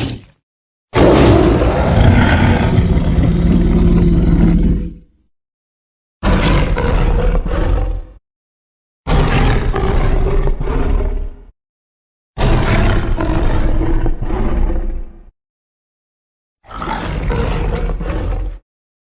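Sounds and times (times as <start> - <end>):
dinosaur roar: 1.0 - 5.1, 6.2 - 8.2, 9.1 - 11.5, 12.4 - 15.3, 16.6 - 18.6.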